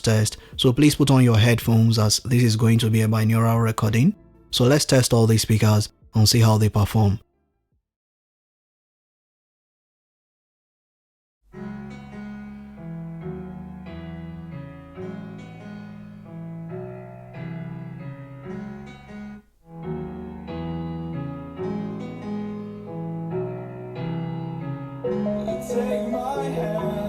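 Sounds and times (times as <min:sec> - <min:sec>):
electric piano chords: 0:19.8 - 0:27.0.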